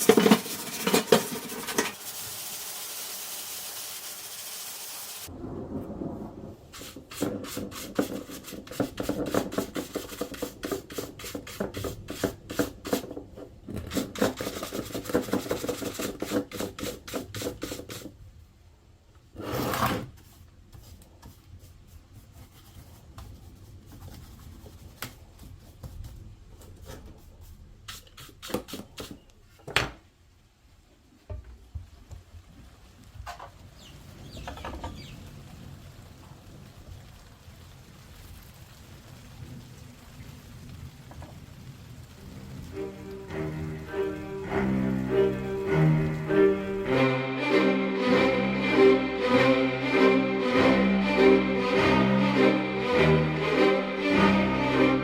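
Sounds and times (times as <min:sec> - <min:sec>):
scrubbing on a hard surface: 0:00.0 - 0:02.0, 0:06.8 - 0:18.1, 0:19.5 - 0:29.2
steady hiss: 0:00.0 - 0:05.3, 0:06.1 - 0:13.1, 0:35.0 - 0:47.6.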